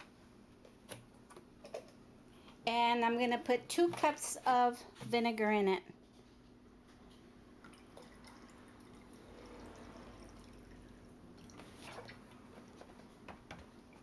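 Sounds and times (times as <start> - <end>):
faint trickle of liquid: 7.6 - 12.8.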